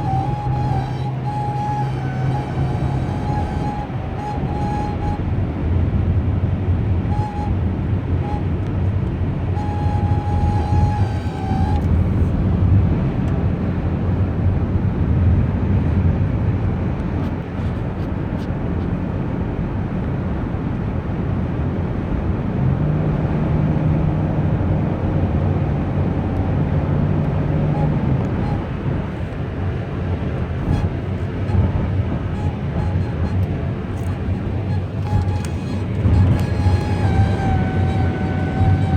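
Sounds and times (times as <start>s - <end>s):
thin whine: 0.0s - 5.9s, 6.9s - 12.6s, 30.2s - 38.9s
low steady hum: 0.0s - 13.9s
road and engine rumble: 0.0s - 38.9s.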